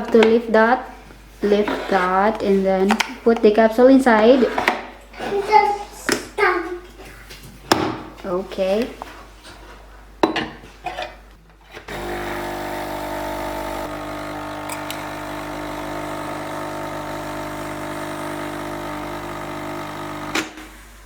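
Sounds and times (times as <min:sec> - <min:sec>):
coffee machine clicks: 0:11.9 - 0:20.5
coffee machine pump humming: 0:11.9 - 0:21.0.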